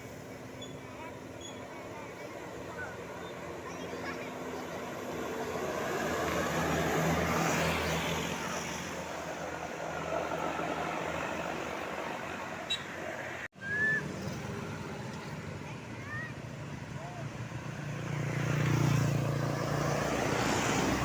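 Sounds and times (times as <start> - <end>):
road traffic: 0.0 - 21.0
vehicle passing close by: 4.5 - 15.7, 16.7 - 21.0.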